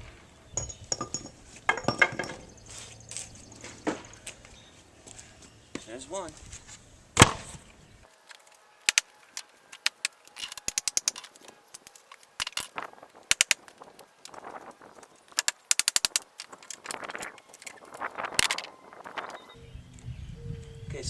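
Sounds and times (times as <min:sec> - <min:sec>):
sharp clicks and rattling: 0:08.1 - 0:19.6
wood scraping: 0:08.1 - 0:19.6.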